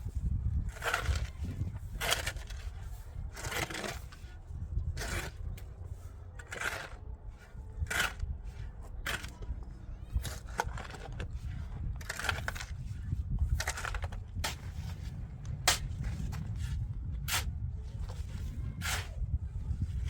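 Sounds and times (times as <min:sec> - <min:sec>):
low steady rumble: 0:00.0 - 0:20.0.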